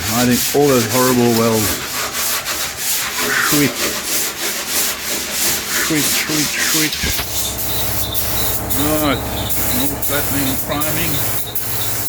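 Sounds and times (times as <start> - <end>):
sandpaper rubbing on metal panel: 0.0 - 12.0
low steady hum: 6.9 - 12.0.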